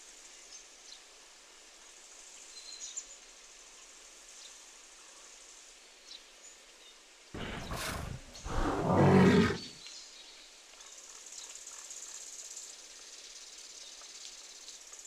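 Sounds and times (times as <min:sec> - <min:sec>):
animal growl: 0:07.4 - 0:09.8
animal raspy breath: 0:07.4 - 0:09.8.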